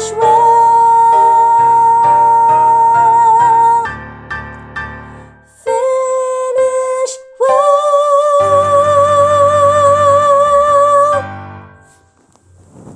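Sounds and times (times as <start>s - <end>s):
woman singing soprano: 0.0s - 3.9s, 5.5s - 11.3s.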